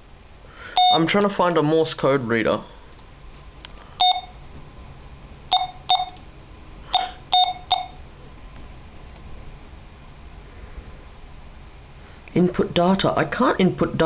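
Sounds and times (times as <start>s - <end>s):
short electronic beeps: 0.8s - 1.1s, 4.0s - 4.4s, 5.5s - 6.2s, 6.9s - 8.0s.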